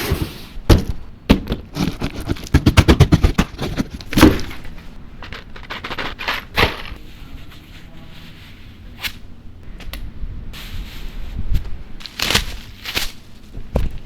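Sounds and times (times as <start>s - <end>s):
chair parts knocking and clattering: 0.7s - 7.0s.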